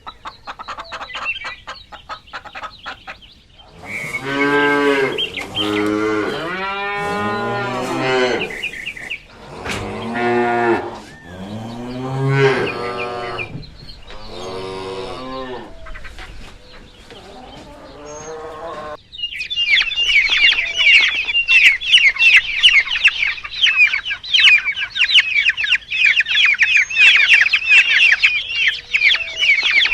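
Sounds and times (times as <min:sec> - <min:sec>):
cattle mooing: 0:03.7 - 0:13.6.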